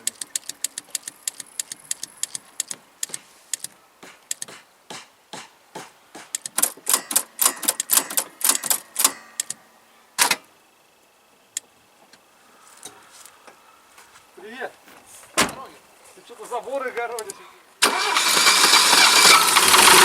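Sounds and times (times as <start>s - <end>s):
engine knocking: 18.3s - 20.0s.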